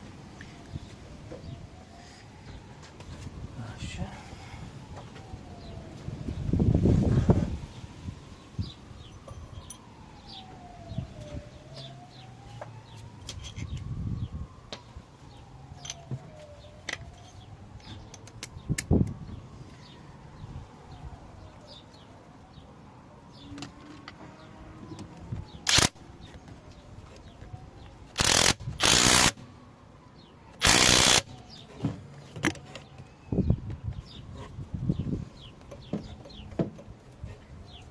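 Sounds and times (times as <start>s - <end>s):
distant siren wailing: 0.0s - 37.9s
birds chirping: 30.1s - 37.9s.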